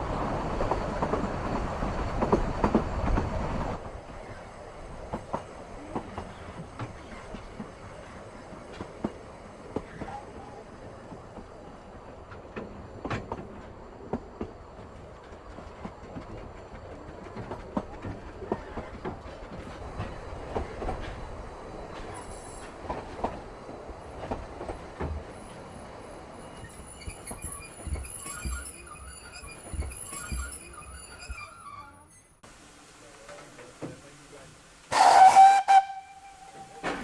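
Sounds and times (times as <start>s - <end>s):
train wheels clicking over rail joints: 0.0s - 31.6s
train rumble: 0.0s - 32.0s
high wheel squeal: 25.4s - 32.4s.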